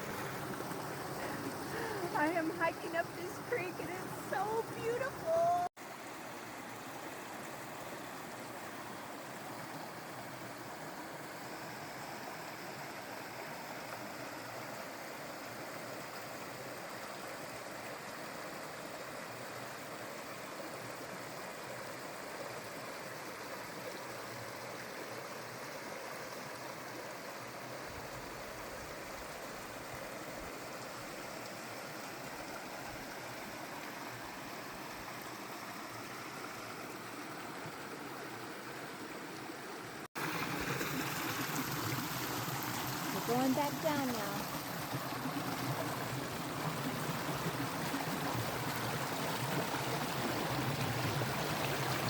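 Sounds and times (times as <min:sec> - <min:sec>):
creek water flowing over rocks: 0:00.0 - 0:52.0.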